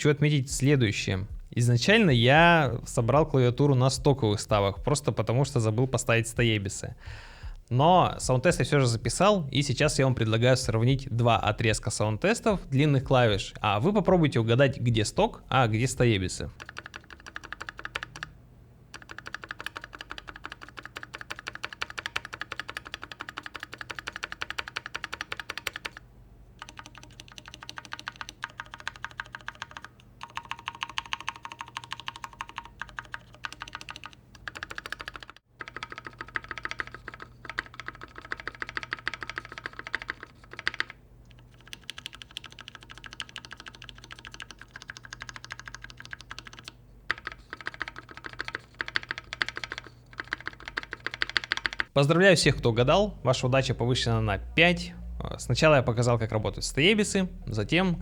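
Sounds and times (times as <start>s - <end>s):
keyboard keys clacking: 26.6s - 40.9s.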